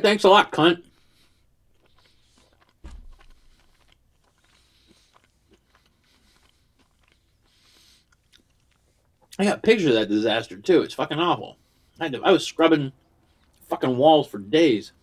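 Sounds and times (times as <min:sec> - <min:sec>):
quiet chewing: 0:00.8 - 0:09.4, 0:12.9 - 0:13.7
biting into crispy food: 0:01.8 - 0:09.3.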